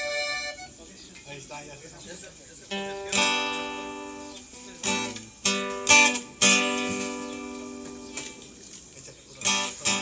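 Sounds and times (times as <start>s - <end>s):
guitar chords strummed: 0.0s - 0.7s, 2.7s - 8.4s, 9.4s - 10.0s.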